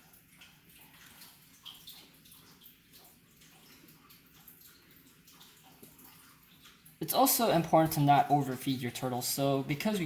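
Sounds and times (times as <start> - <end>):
water trickling and dripping: 0.0 - 10.0.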